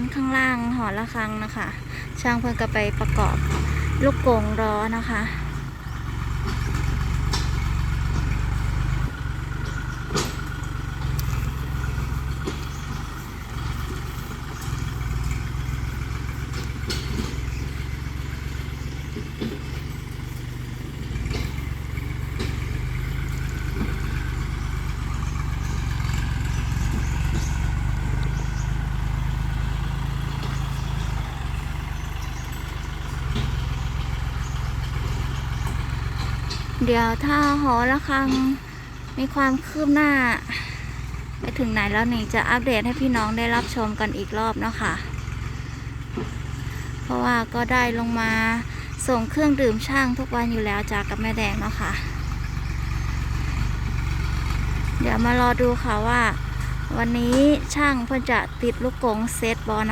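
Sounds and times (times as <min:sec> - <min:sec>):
tractor engine running: 0:00.0 - 0:59.9
sharp knocks and clanks: 0:06.2 - 0:09.0, 0:09.6 - 0:28.6, 0:30.1 - 0:39.2.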